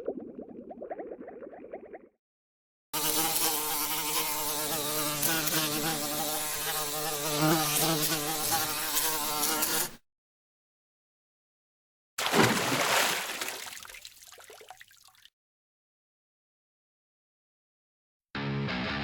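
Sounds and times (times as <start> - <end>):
insect buzzing: 3.0 - 10.0.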